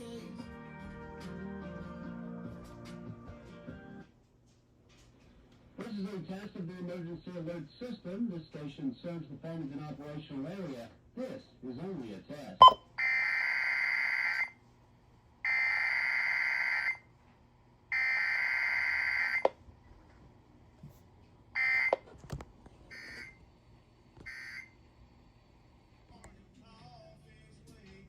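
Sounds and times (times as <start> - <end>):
faint short blips: 12.6 - 12.8.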